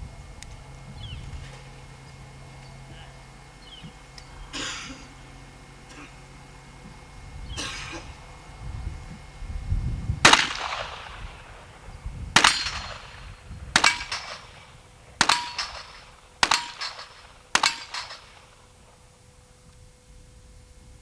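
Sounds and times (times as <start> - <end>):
revolver gunshots with echo: 10.2 - 19.0.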